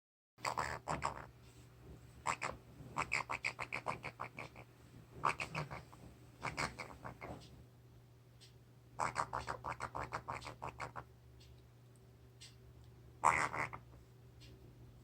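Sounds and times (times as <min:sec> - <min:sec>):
parrot clicking chirps: 0:02.2 - 0:04.6, 0:05.2 - 0:07.3, 0:08.4 - 0:11.0, 0:13.2 - 0:13.9.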